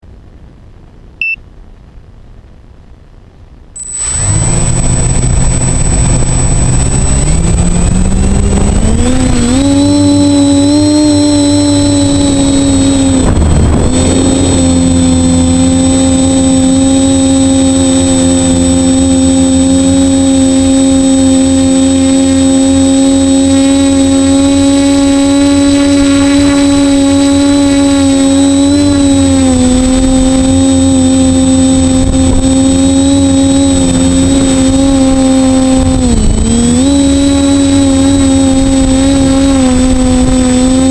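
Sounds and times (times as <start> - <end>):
thin high tone: 3.8 - 18.4
drone motors whining: 3.8 - 40.9.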